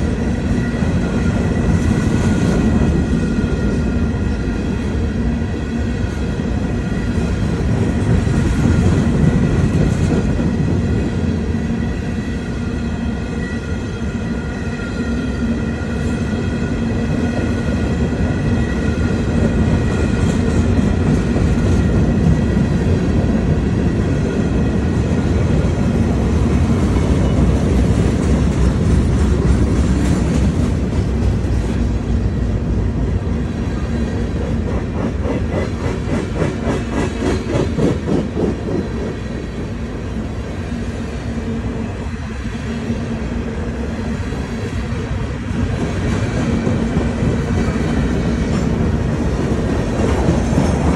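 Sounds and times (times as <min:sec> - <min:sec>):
train wheels rumbling: 0:00.0 - 0:50.9.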